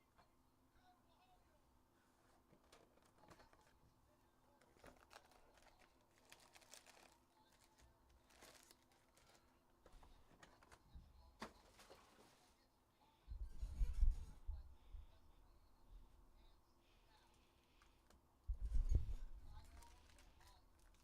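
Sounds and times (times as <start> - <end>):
foil card wrappers crinkling: 4.6 - 9.6, 19.6 - 21.0.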